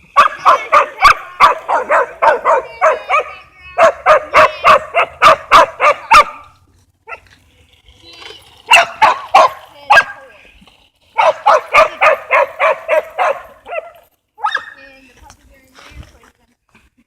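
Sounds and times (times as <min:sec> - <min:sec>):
dog barking: 0:00.2 - 0:06.4, 0:08.7 - 0:10.2, 0:11.2 - 0:14.8.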